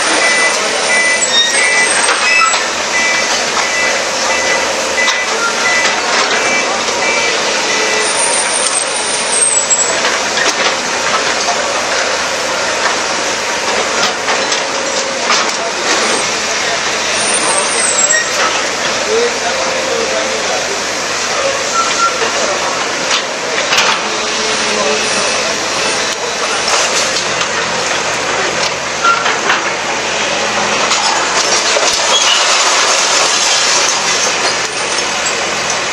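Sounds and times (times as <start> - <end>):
bulldozer running: 0.0 - 35.9
knocks and crashes: 30.8 - 35.6
debris breaking and crunching: 30.8 - 35.9.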